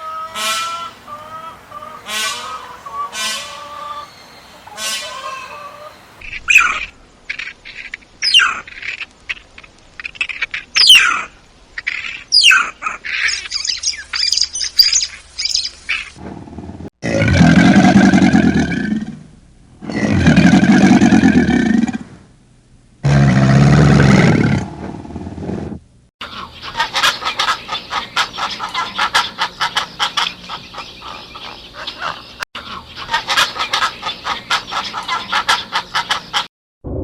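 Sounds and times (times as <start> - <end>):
harsh poultry squawk: 0.0 - 16.2, 26.2 - 36.5
poultry calling: 0.0 - 16.2, 26.2 - 36.5
birds chirping: 0.2 - 16.2, 26.2 - 36.4.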